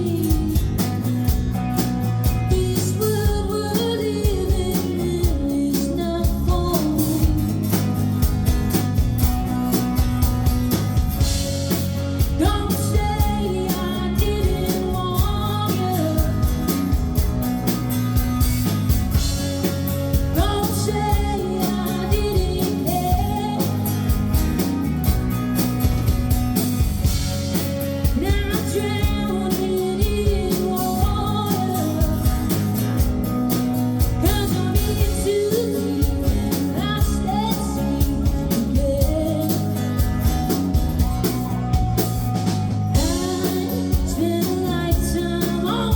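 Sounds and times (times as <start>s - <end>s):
woman singing: 0.0s - 1.4s, 2.2s - 8.1s, 12.2s - 17.3s, 20.1s - 24.8s, 28.0s - 33.2s, 34.0s - 40.5s, 42.9s - 45.9s
drums with steady beat: 0.0s - 45.9s
electric guitar: 0.0s - 45.9s.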